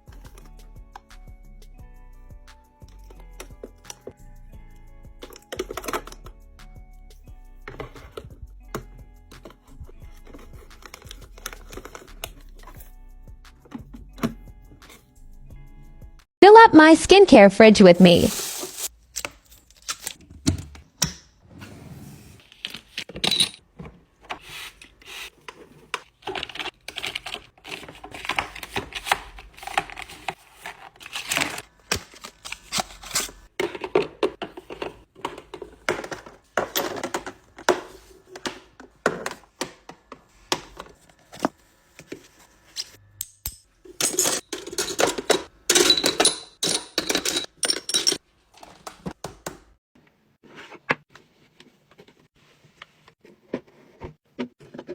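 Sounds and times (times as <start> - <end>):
bottles and jars tapping and clacking: 10.2 - 12.4, 33.6 - 41.0, 43.4 - 49.8
rustling: 18.3 - 18.9.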